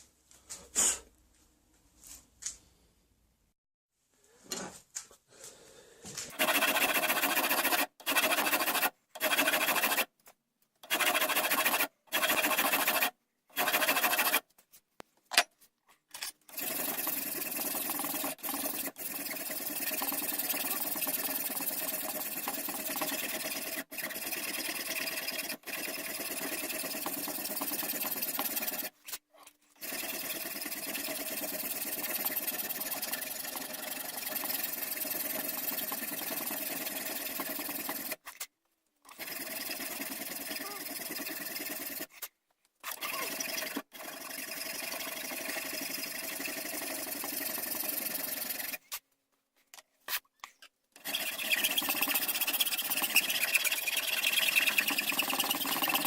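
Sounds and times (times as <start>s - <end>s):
small power tool grinding: 6.3s - 10.1s, 10.8s - 14.4s, 16.5s - 29.2s, 29.8s - 38.3s, 39.1s - 42.2s, 51.0s - 56.0s.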